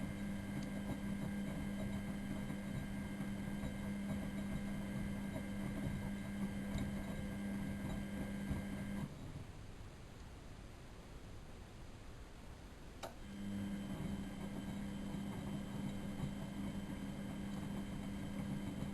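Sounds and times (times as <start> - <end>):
washing machine motor humming: 0.0 - 9.2, 13.0 - 18.9.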